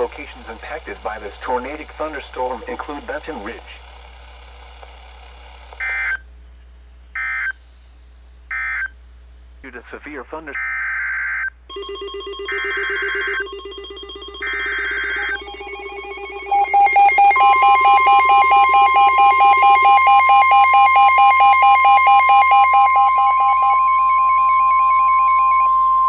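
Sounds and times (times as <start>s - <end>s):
digital header bursts: 11.7s - 23.8s
rapidly pulsing alert beep: 11.7s - 25.4s
steady alarm tone: 11.7s - 26.0s.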